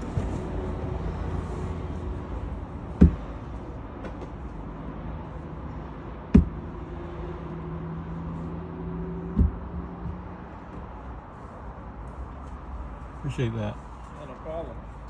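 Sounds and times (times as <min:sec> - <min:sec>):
steady mechanical hum: 0:00.0 - 0:15.0
sharp thuds: 0:02.9 - 0:03.5, 0:06.3 - 0:06.6, 0:09.3 - 0:10.2.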